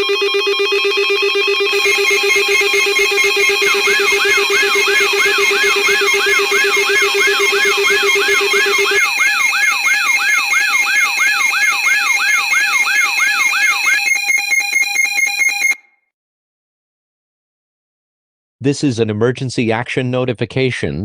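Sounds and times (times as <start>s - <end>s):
rapid electronic beeping: 0.0s - 15.8s
steady high alarm tones: 0.0s - 15.8s
electronic alarm siren tone: 0.0s - 16.0s.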